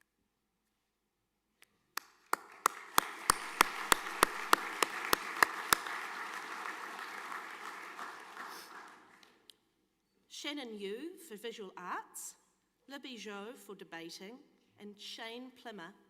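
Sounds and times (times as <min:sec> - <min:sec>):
loud evenly spaced claps: 0:02.0 - 0:09.5
audience applauding: 0:02.2 - 0:09.3.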